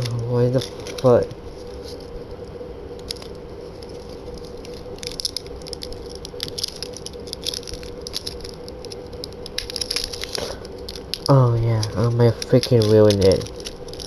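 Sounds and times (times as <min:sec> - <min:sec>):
low electrical hum: 0:00.0 - 0:14.0
handling rattles and clicks: 0:03.0 - 0:14.0.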